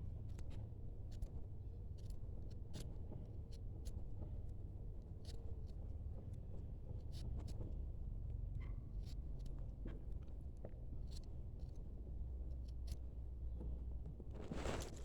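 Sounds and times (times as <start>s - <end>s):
light clicks and crackles: 14.3s - 15.0s.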